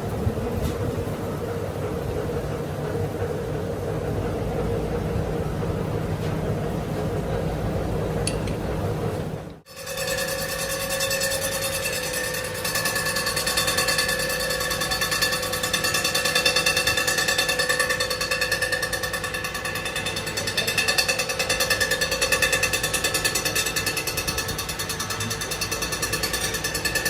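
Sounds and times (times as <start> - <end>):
power tool rattling and whining: 9.6 - 27.0.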